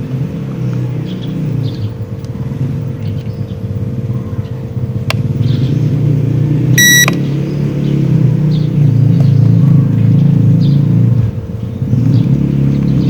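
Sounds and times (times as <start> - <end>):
low motor hum: 0.0 - 13.0
short high electronic beep: 6.8 - 7.1.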